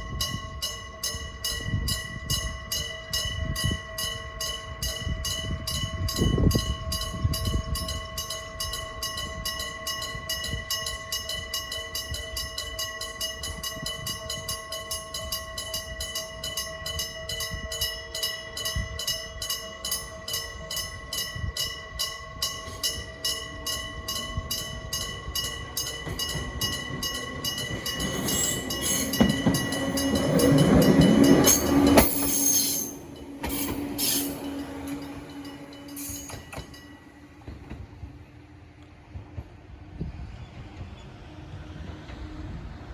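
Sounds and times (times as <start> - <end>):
train passing: 0.0 - 42.9
level crossing bell ringing: 19.6 - 37.0.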